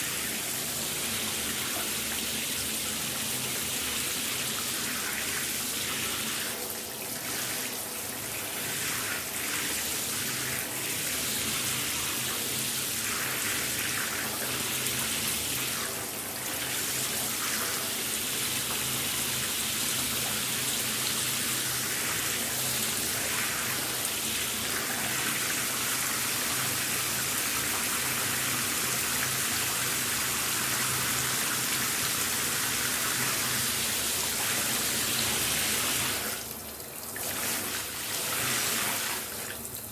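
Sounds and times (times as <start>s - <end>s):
shower water spraying: 30.9s - 39.9s.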